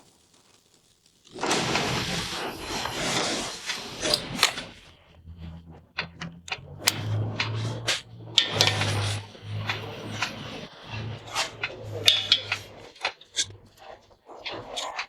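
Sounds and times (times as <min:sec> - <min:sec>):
sharp tool clicks: 0:04.1 - 0:04.6.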